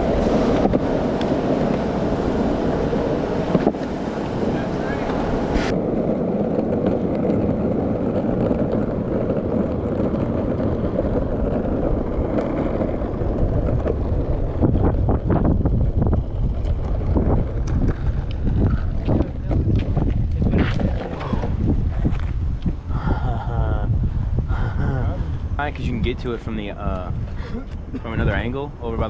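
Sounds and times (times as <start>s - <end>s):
skateboard clacks: 0.0s - 22.4s
skateboard wheels rolling on concrete: 0.0s - 29.0s
wind buffeting microphone: 0.0s - 29.0s.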